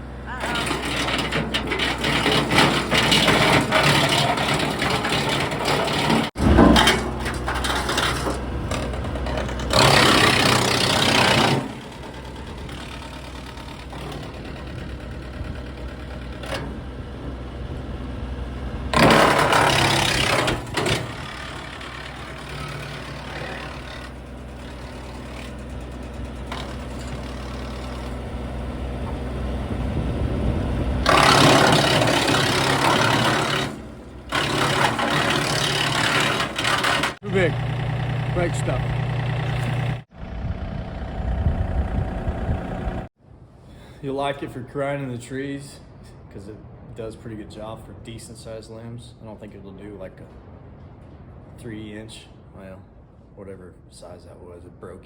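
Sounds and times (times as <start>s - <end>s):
wood chipper grinding branches: 0.0s - 43.1s
diesel tractor engine running: 0.0s - 43.2s.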